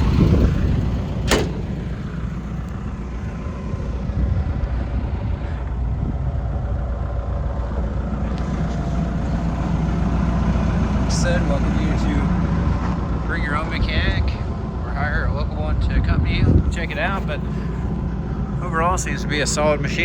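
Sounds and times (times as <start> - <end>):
excavator diesel engine idling: 0.0 - 3.3, 6.4 - 13.6.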